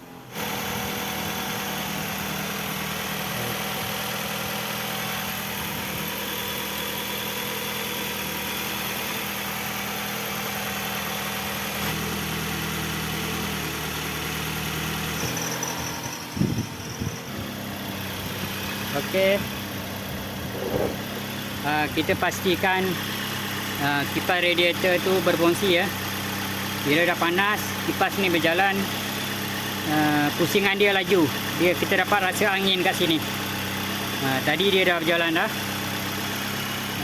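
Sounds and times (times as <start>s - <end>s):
car engine idling: 0.0s - 37.0s.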